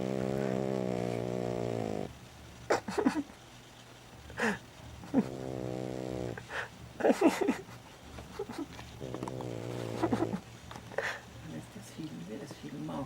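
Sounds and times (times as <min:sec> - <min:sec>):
small dog snoring: 0:00.0 - 0:02.1, 0:05.1 - 0:06.5, 0:09.0 - 0:10.4.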